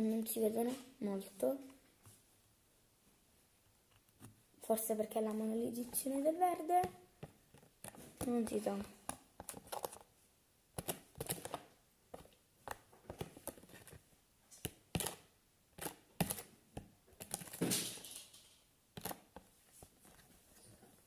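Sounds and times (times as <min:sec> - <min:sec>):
small objects clicking and tapping: 0:06.8 - 0:10.1, 0:10.8 - 0:20.2.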